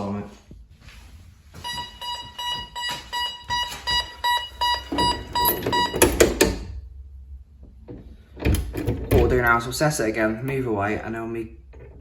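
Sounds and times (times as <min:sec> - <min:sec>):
alarm sounder beeping: 0:01.6 - 0:06.2.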